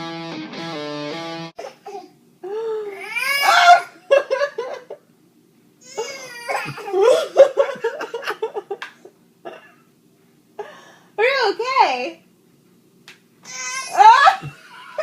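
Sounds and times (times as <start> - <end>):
baby coughing: 1.6 - 2.2
baby squealing: 2.9 - 4.0, 13.4 - 15.0.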